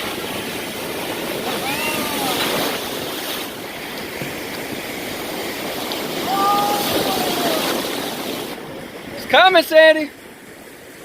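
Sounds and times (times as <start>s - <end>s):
ocean surf washing in: 0.0s - 11.0s
faint voice calling out: 1.4s - 2.6s, 6.2s - 7.8s.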